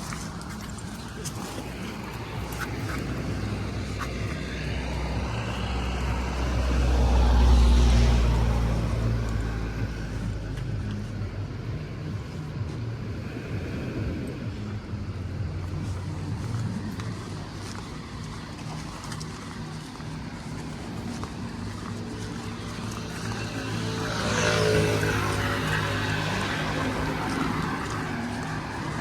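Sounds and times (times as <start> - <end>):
engine passing by: 0.0 - 29.0
outdoor background noise: 0.0 - 29.0.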